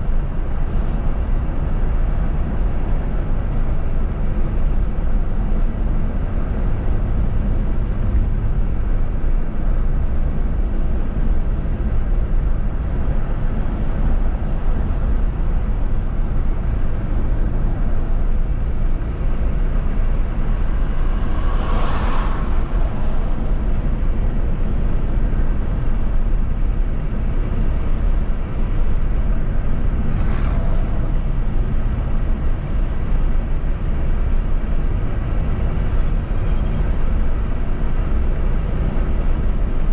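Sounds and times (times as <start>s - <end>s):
road and wind noise: 0.0s - 39.9s
passing vehicle whoosh: 17.8s - 26.6s.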